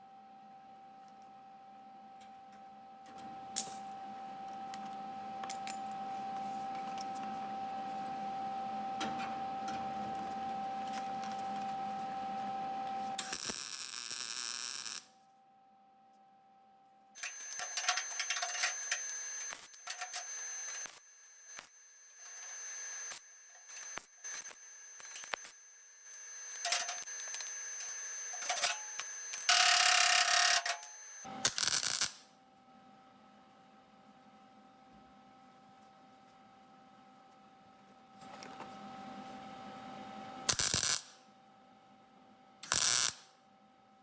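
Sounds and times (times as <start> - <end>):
welding frying crackle: 13.2 - 15.1, 17.2 - 32.2, 40.5 - 41.1, 42.6 - 43.2
metallic clicks and scrapes: 17.2 - 20.9.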